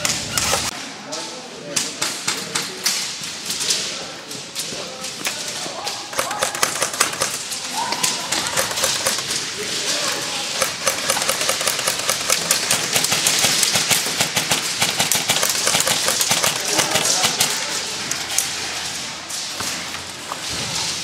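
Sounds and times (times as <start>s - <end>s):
airsoft guns firing: 6.0s - 9.5s, 10.3s - 18.4s.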